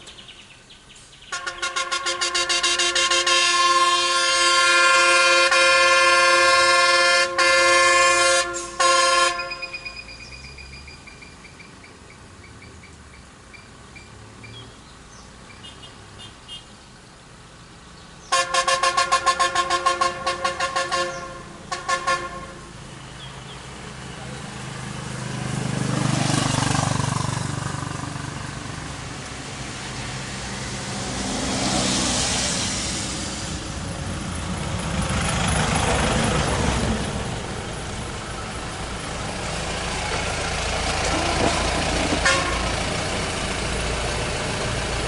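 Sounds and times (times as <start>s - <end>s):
vehicle horn blaring: 1.3s - 10.1s, 18.3s - 22.7s, 41.1s - 42.8s.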